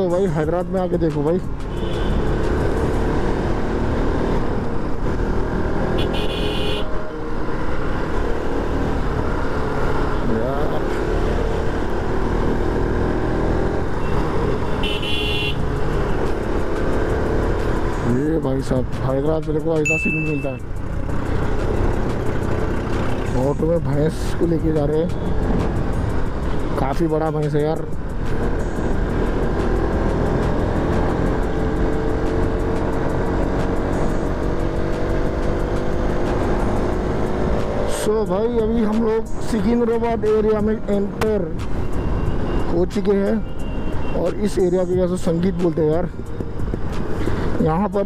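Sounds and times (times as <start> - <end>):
road and wind noise: 0.0 - 48.0
high-pitched vehicle horn beep: 6.0 - 6.9, 14.0 - 15.6, 19.9 - 20.6, 43.4 - 44.3.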